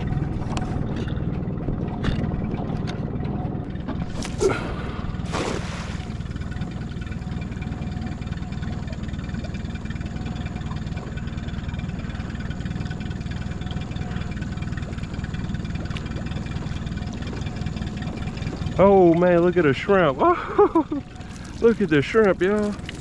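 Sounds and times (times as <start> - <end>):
outboard motor idling: 0.0 - 23.0
net splashing on water: 4.1 - 6.3.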